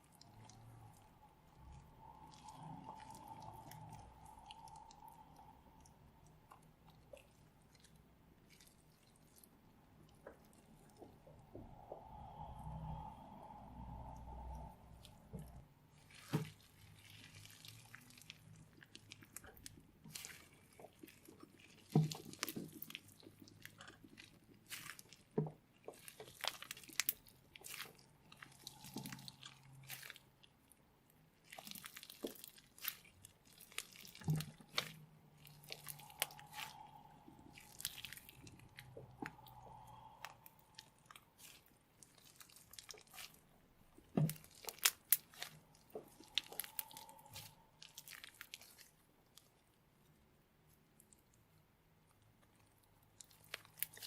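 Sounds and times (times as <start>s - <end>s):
slime crackling and popping: 16.0s - 30.5s, 31.4s - 49.6s, 52.4s - 54.0s.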